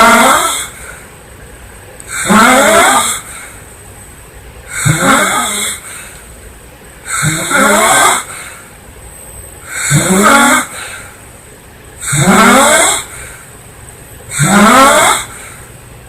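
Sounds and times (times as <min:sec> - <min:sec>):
woman snoring loudly: 0:00.0 - 0:00.7, 0:02.1 - 0:03.2, 0:04.8 - 0:05.8, 0:07.2 - 0:08.3, 0:09.8 - 0:10.8, 0:12.1 - 0:13.1, 0:14.4 - 0:15.4
quiet breathing: 0:00.6 - 0:02.3, 0:03.1 - 0:04.0, 0:04.6 - 0:06.5, 0:08.2 - 0:09.9, 0:10.6 - 0:11.6, 0:13.0 - 0:13.8, 0:15.2 - 0:15.8.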